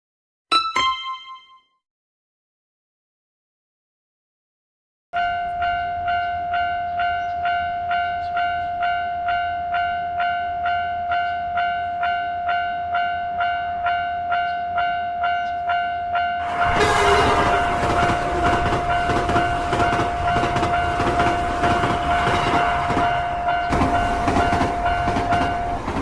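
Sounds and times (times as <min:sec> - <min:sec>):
railroad crossing warning bell: 0:05.2 - 0:26.0
train passing with loud rush: 0:16.4 - 0:26.0.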